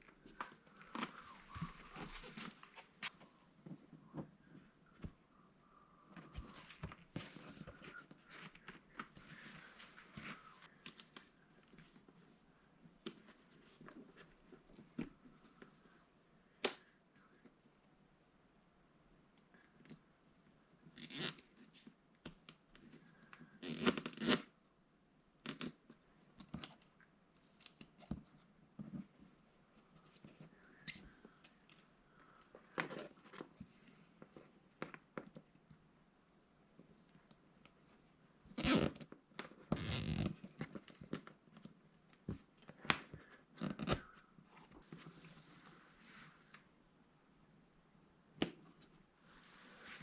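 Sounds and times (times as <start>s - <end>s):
rustling or scraping handling noise: 0.0s - 5.2s, 44.5s - 46.9s, 48.8s - 50.0s
handling rustling and scraping: 0.0s - 5.3s, 6.1s - 15.8s, 37.8s - 46.9s.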